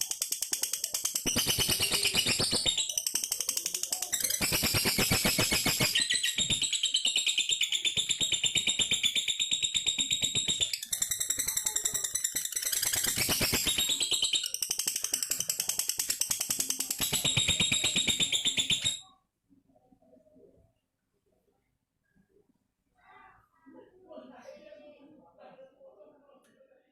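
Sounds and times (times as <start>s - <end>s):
lovebird trilling: 0.0s - 19.1s.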